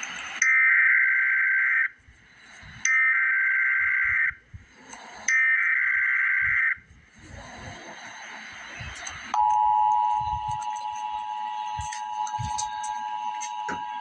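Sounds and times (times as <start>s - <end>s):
two-tone attention signal: 9.3s - 14.0s.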